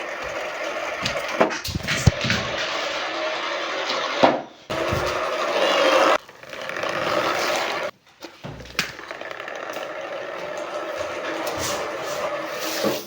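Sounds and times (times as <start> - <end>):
small electric motor running: 4.7 - 7.9, 8.8 - 13.0.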